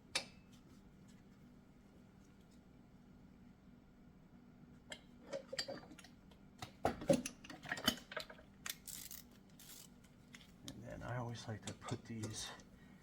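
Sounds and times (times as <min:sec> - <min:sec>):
metallic clicks of parts handled: 0:07.1 - 0:10.5.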